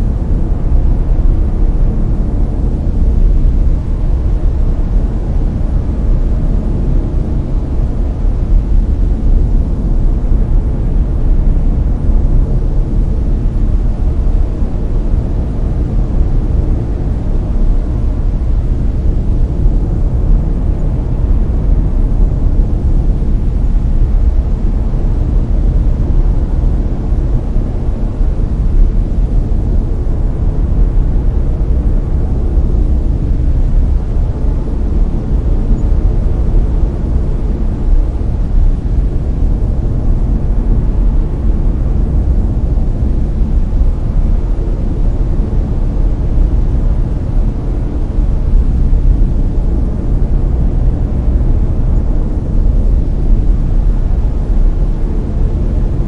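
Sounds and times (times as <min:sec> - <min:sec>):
deep brown noise hiss: 0:00.0 - 0:56.0.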